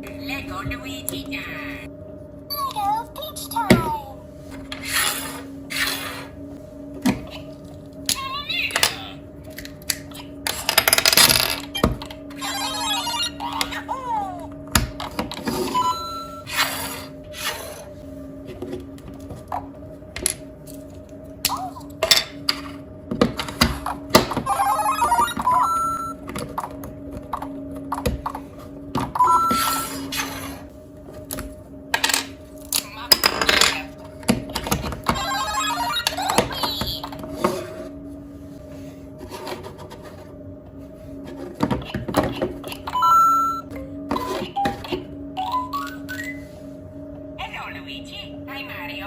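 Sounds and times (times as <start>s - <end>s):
plastic pieces clicking: 9.9s - 11.6s.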